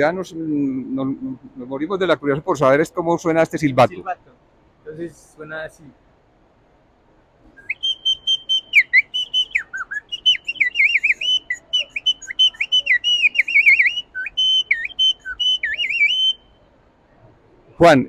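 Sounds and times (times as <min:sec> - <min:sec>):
bird-call whistle warbling: 0:07.6 - 0:16.7.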